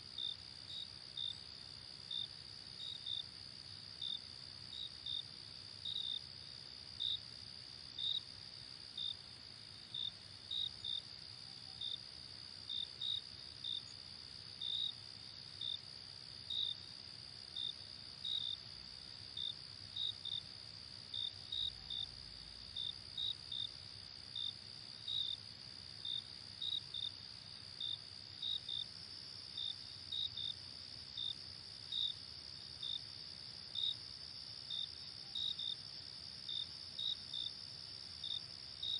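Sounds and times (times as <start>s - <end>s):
crickets chirping: 0.0s - 38.9s.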